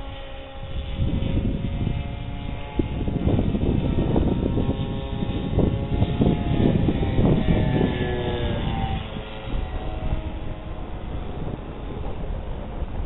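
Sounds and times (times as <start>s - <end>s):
model airplane engine: 0.0s - 13.0s
wind rumble on microphone: 0.0s - 13.0s.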